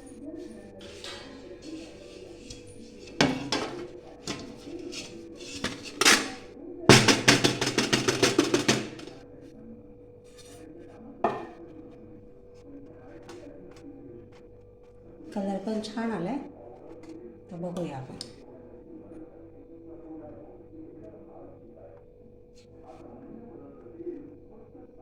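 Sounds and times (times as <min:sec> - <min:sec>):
faint background music: 0:00.0 - 0:25.0
cake tin knocking and tapping: 0:00.8 - 0:09.2, 0:11.3 - 0:11.6.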